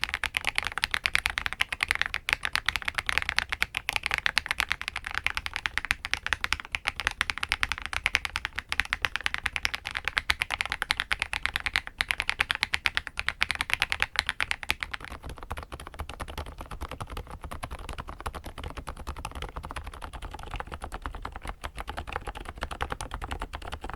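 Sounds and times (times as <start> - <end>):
fast typing on mechanical keyboard: 0.0 - 23.9.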